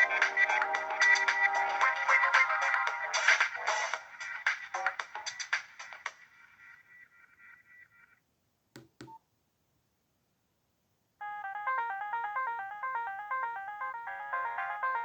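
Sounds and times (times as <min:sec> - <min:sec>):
polyphonic ringtone melody: 0:11.2 - 0:15.0.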